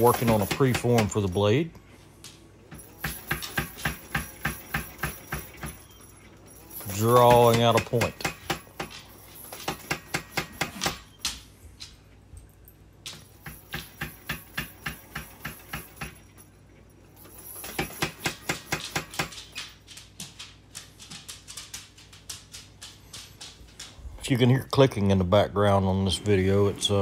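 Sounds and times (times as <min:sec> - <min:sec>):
power hammer striking hot steel: 0:00.0 - 0:01.3, 0:07.2 - 0:08.9.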